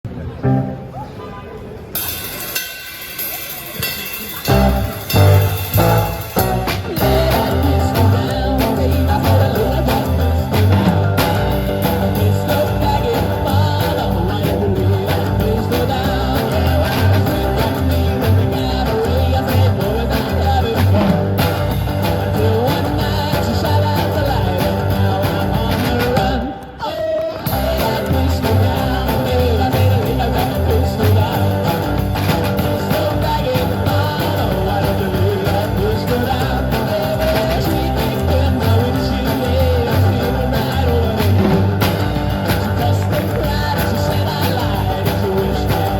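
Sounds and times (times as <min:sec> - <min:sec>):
band playing country song: 0:01.8 - 0:45.9
person singing: 0:03.4 - 0:45.9
pulsing bass beat: 0:04.4 - 0:26.4.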